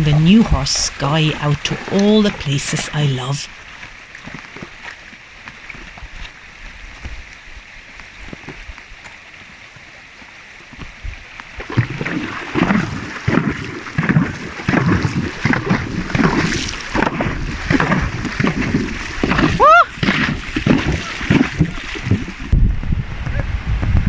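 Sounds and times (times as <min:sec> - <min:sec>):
hooves splashing in water: 0:00.0 - 0:24.0
water rushing: 0:00.0 - 0:24.0.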